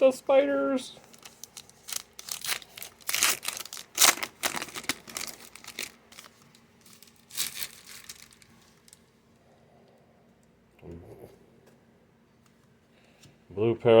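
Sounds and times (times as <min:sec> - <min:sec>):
card pack wrapper crinkling and tearing: 0:01.0 - 0:09.1.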